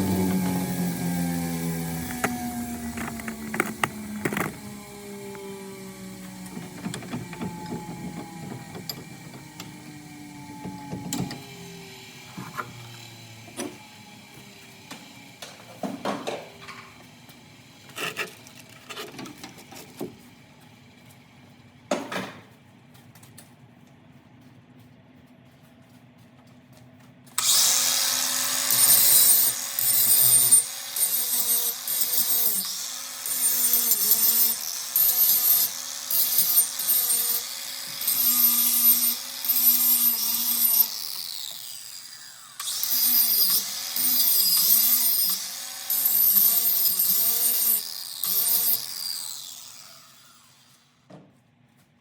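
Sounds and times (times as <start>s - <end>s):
power tool motor winding down: 0.0s - 15.4s, 27.4s - 51.0s.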